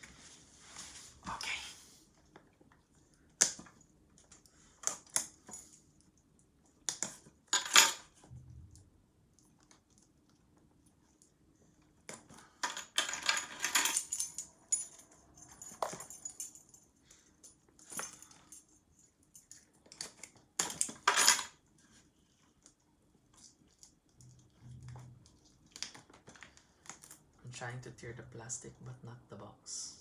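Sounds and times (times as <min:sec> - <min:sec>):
keys jangling: 0:12.6 - 0:16.8.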